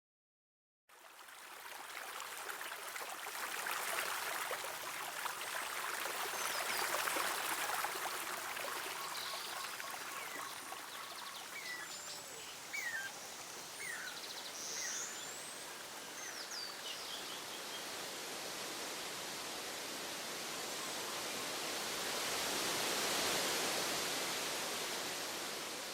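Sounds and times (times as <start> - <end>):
birds chirping: 8.9 - 17.8.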